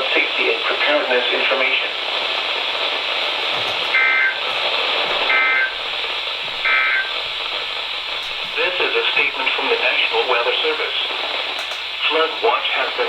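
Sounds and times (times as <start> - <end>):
radio receiver hiss: 0.0 - 13.0
two-tone digital bursts: 6.6 - 7.2.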